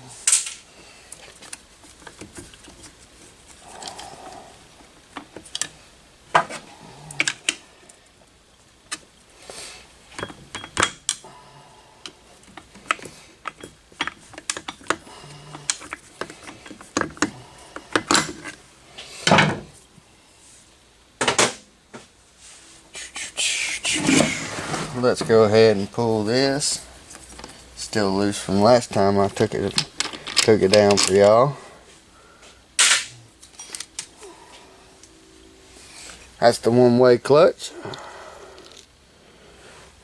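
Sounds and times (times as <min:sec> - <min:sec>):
metal tools clinking on engine: 0:10.2 - 0:11.0, 0:28.9 - 0:31.6, 0:32.8 - 0:34.0.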